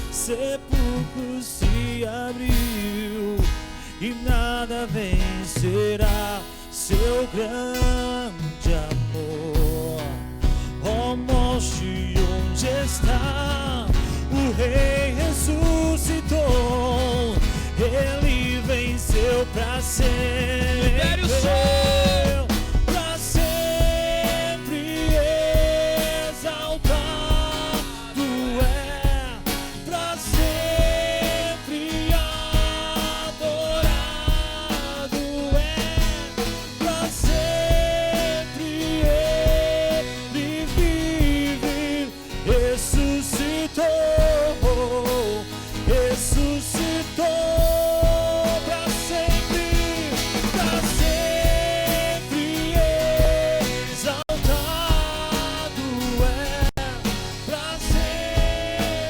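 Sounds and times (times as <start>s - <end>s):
live worship band music: 0.0s - 59.0s.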